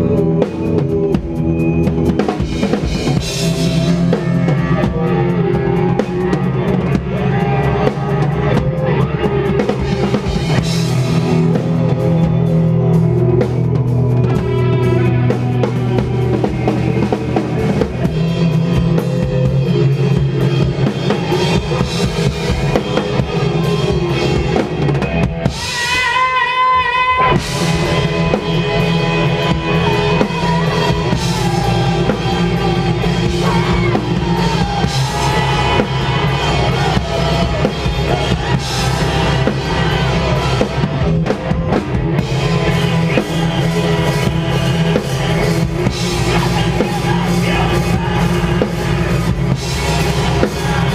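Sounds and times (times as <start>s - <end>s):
rock band playing live: 0.0s - 50.9s.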